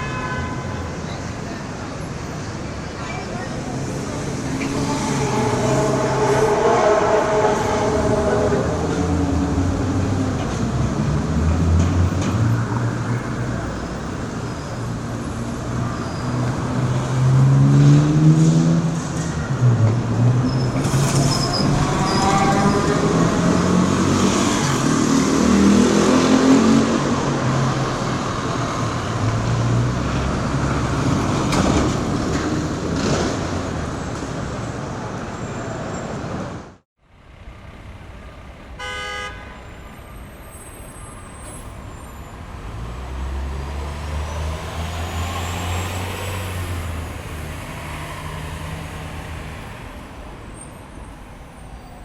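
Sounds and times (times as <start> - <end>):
car horn toot: 0.0 - 1.0, 38.8 - 39.8
street traffic passing: 0.0 - 52.0
heavy vehicle engine humming: 1.0 - 15.7, 33.6 - 48.0.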